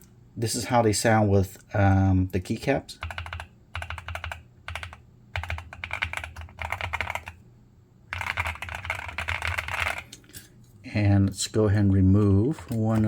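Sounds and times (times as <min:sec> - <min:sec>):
fast typing on mechanical keyboard: 0:03.0 - 0:07.4, 0:08.1 - 0:10.1, 0:12.7 - 0:13.0.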